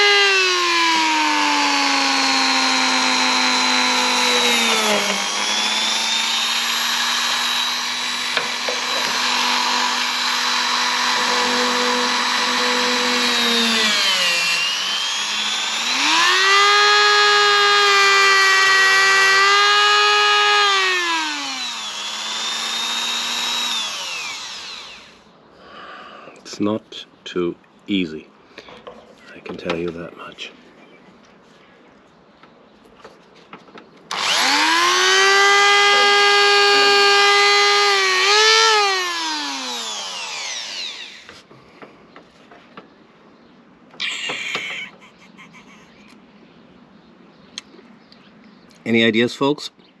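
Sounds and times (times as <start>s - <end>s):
rotary tool grinding metal: 1.6s - 25.2s, 34.1s - 41.4s.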